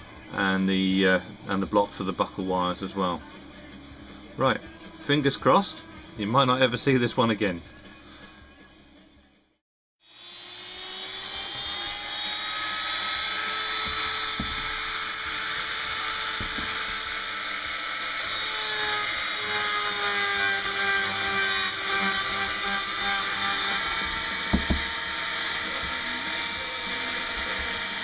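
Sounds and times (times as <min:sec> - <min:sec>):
rotary drill grinding whine: 0:10.0 - 0:28.0.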